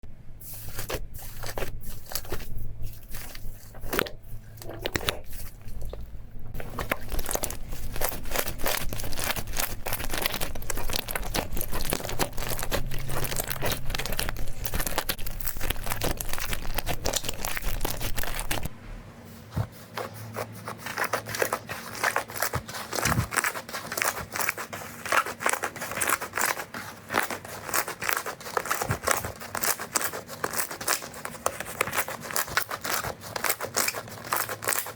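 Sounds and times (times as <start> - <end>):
low hum: 0.0 - 19.7
slime crackling and popping: 0.7 - 18.7, 20.9 - 34.9.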